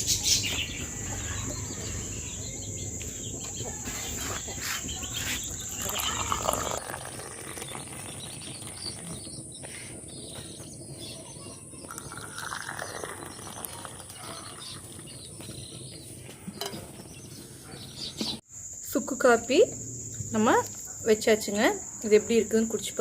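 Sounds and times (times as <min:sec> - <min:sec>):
metal vessels clinking and scraping: 0:16.5 - 0:17.0.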